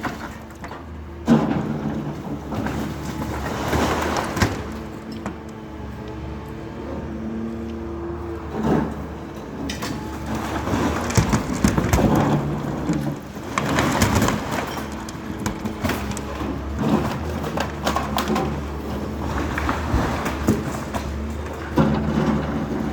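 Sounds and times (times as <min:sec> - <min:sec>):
steady engine hum: 0:00.9 - 0:22.9
crunching and knocking: 0:10.1 - 0:18.8.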